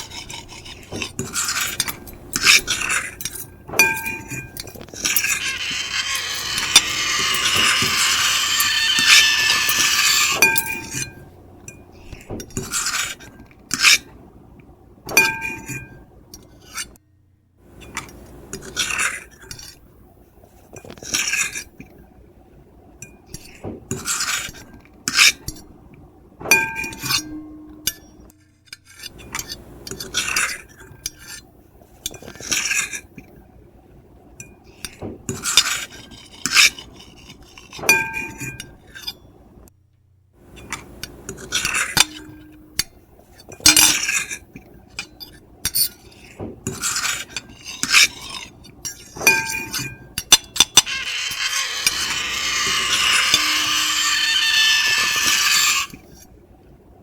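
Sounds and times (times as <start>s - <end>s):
fork and knife scraping a plate: 0.0s - 11.3s, 26.6s - 28.1s, 32.1s - 33.1s, 34.7s - 39.3s, 40.6s - 56.3s.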